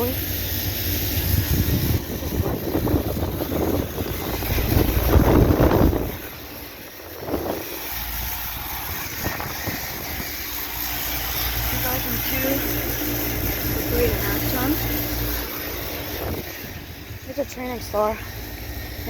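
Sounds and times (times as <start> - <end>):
air conditioner units humming: 0.0 - 19.0
loud rushing noise: 1.1 - 12.0.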